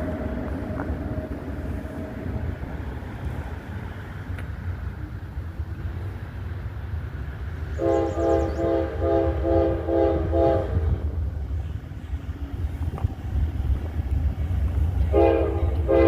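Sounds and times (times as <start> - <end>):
train rumble: 0.0 - 16.0
locomotive air horn blasts: 7.8 - 11.1, 15.0 - 16.0.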